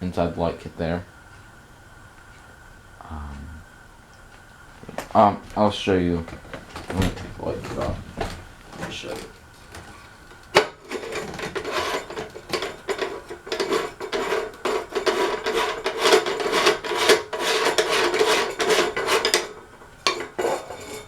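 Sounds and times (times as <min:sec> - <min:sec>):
scraping and rubbing: 0:06.3 - 0:21.0.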